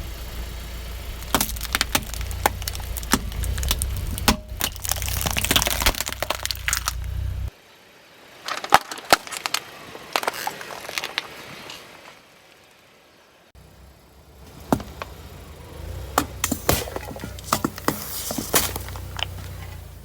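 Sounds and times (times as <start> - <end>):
car engine low rumble: 0.0 - 8.4, 13.6 - 20.0
objects cracking under tyre: 1.0 - 7.5, 8.3 - 12.1, 14.5 - 20.0.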